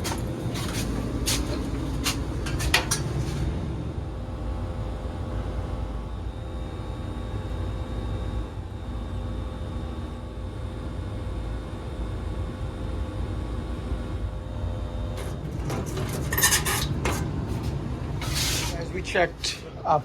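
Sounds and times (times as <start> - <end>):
low mechanical hum with tones: 0.0 - 20.0.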